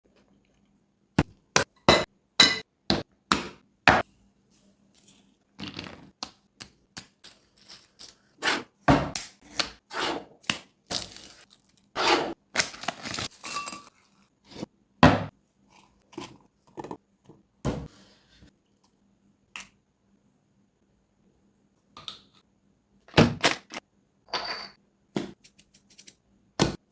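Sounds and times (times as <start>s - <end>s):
kitchenware clinking: 1.8s - 2.7s, 13.2s - 14.2s, 24.3s - 24.8s
packaging crinkling and tearing: 10.9s - 13.4s.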